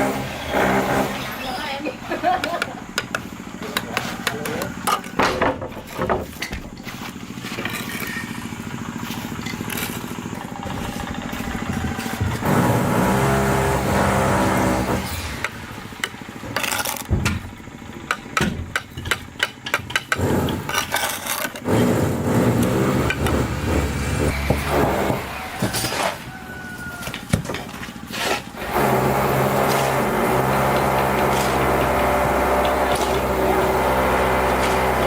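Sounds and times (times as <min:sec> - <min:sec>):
small engine running: 0:00.0 - 0:05.0, 0:06.9 - 0:17.0, 0:20.1 - 0:25.8, 0:27.9 - 0:35.0
knocks and scraping: 0:00.0 - 0:35.0.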